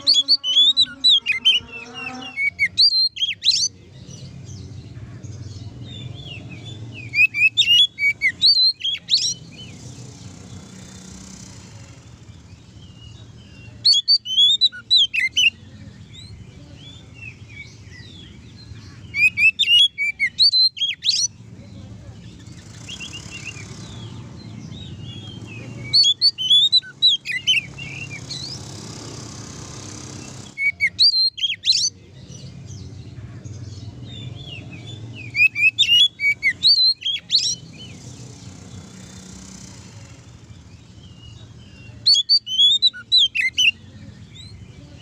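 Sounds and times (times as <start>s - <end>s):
magpie-robin singing whistled phrases: 0.0s - 3.7s, 6.2s - 9.7s, 13.0s - 21.4s, 24.7s - 28.6s, 30.5s - 31.9s, 34.1s - 37.9s, 40.9s - 44.6s.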